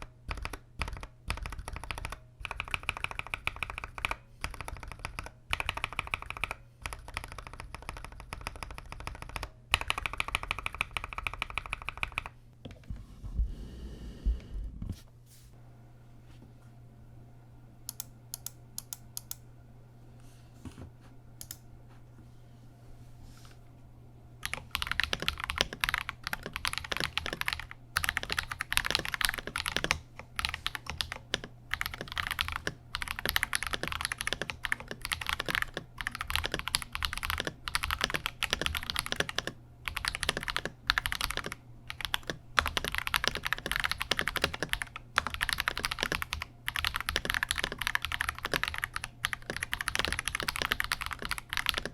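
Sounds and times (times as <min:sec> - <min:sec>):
mechanical keyboard typing: 0:00.0 - 0:12.3, 0:24.4 - 0:51.9
low steady hum: 0:00.0 - 0:51.9.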